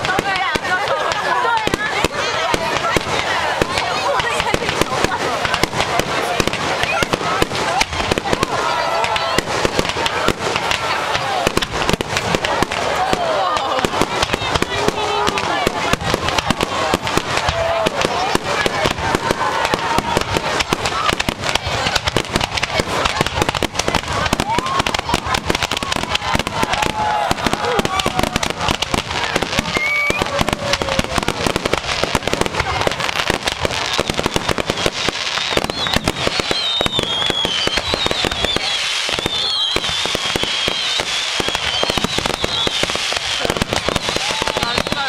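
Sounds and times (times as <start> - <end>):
fireworks crackling: 0.0 - 45.0
fireworks whistling: 0.0 - 45.0.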